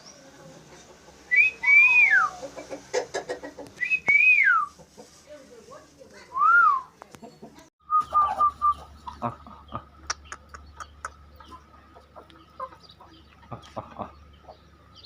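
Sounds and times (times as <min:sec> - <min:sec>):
chickens clucking: 0:00.0 - 0:06.4, 0:07.0 - 0:15.0.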